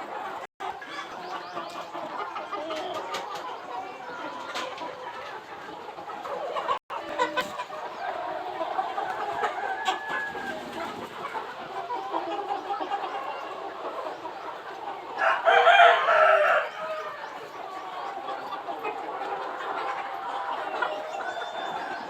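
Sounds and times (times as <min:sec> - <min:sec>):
chickens clucking: 0:00.0 - 0:22.0
rooster crowing: 0:15.2 - 0:17.1.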